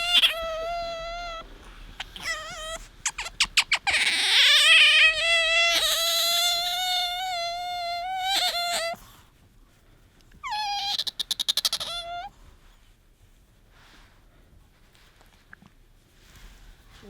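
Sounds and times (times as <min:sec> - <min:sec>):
otter squeaking and whistling: 0:00.0 - 0:09.0, 0:10.4 - 0:12.3.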